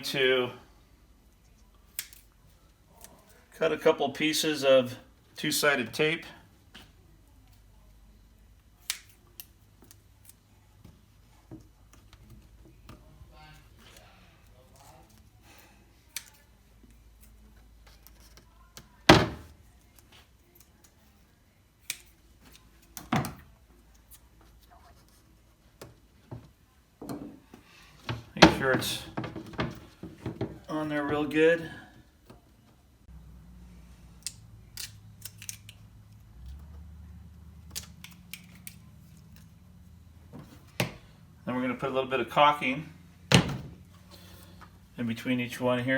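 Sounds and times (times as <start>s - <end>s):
sharp clicks and snaps: 34.2s - 35.8s.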